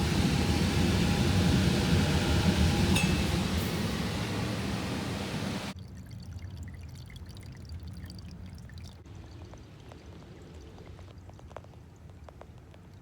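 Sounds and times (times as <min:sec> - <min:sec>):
water rushing from plumbing: 0:00.0 - 0:05.8
water dripping and trickling: 0:02.9 - 0:13.0.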